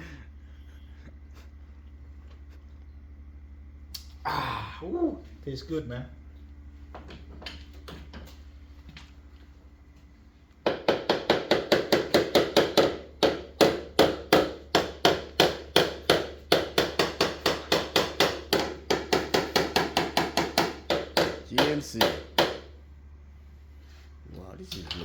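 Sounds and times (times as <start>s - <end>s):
hammer tapping car body panel: 10.6s - 22.7s.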